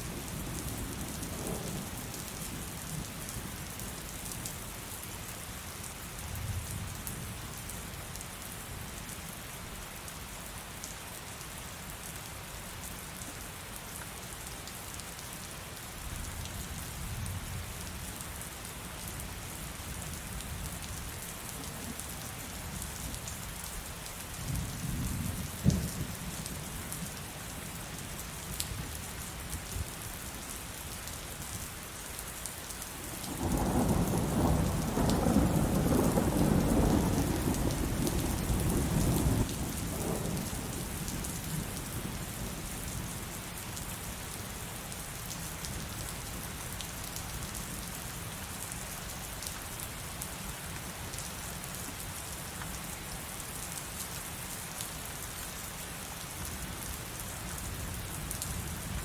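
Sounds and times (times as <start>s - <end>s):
heavy rain: 0.0s - 59.0s
rolling thunder: 33.4s - 40.8s.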